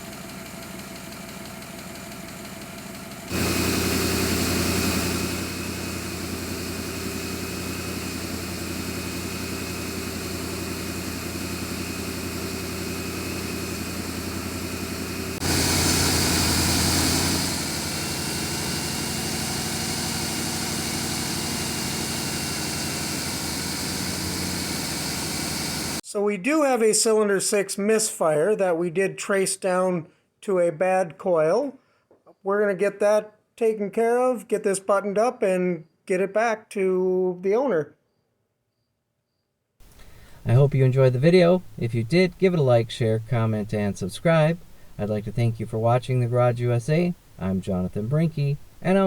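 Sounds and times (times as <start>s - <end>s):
engine idling with misfire: 0.0s - 26.0s, 39.8s - 49.0s.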